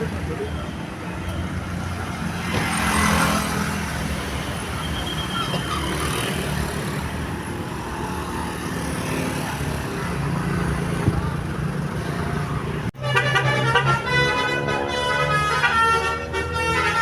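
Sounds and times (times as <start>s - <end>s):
traffic noise: 0.0s - 17.0s.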